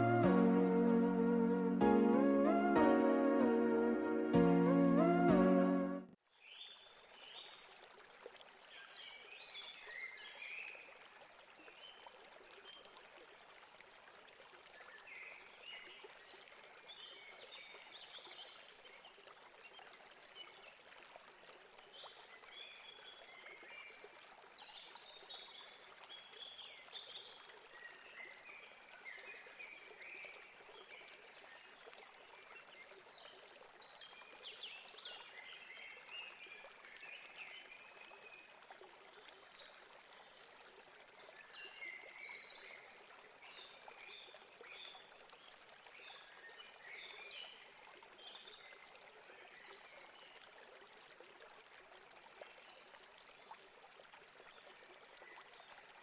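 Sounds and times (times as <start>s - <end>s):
flowing river water: 0.0s - 56.0s.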